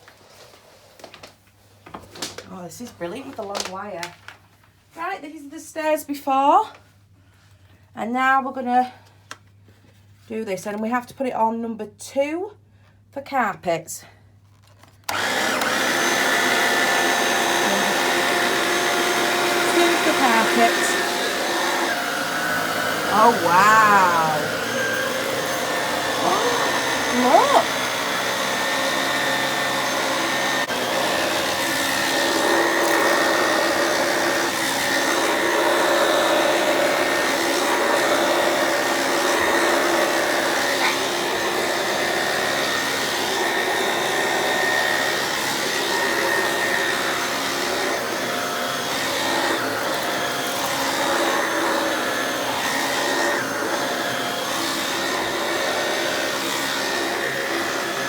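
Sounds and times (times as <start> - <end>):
vacuum cleaner on carpet: 15.1 - 58.0.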